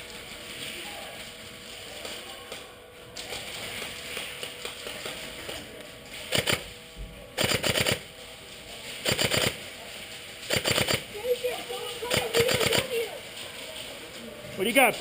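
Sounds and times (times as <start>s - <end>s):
airsoft gun firing bursts: 6.3s - 6.6s, 7.4s - 8.1s, 9.0s - 9.6s, 10.5s - 11.1s, 12.1s - 13.0s.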